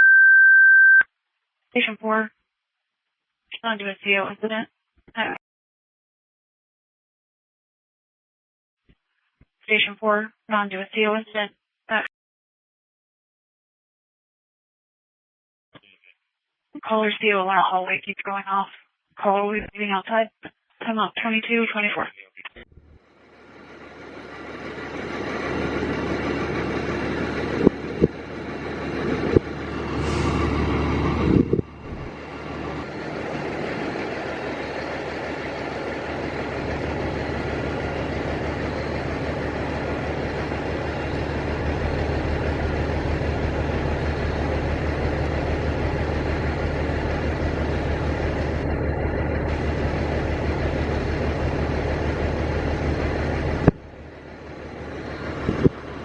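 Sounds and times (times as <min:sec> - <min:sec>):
vehicle engine running: 0:22.8 - 0:56.0.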